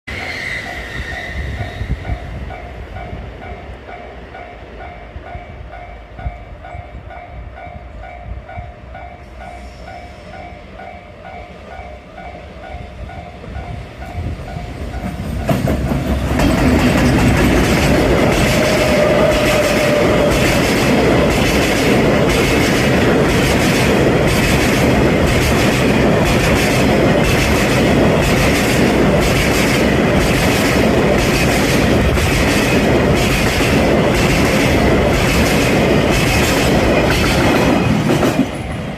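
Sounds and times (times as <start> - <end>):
freight train passing: 0.0 - 38.9
wheels clacking over rail joints: 14.5 - 38.9.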